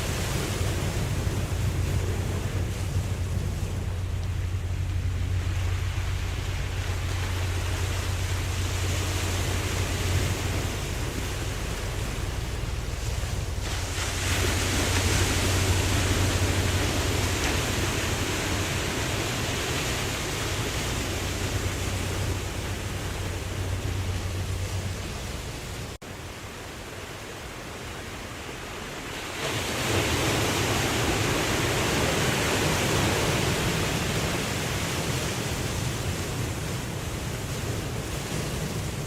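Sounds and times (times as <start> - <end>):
low rumble: 0.0 - 26.0
ocean waves washing in: 0.0 - 39.0.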